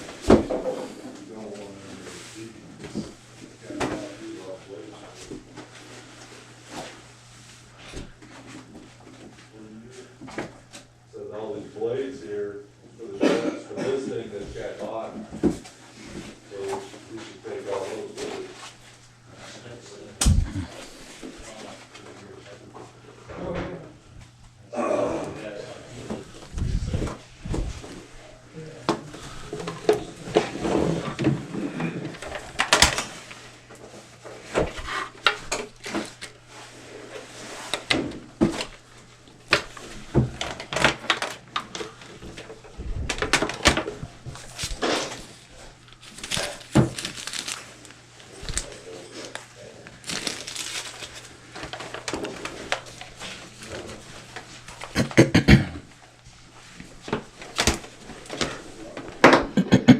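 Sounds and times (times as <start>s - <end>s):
low talk: 19.3s - 24.0s.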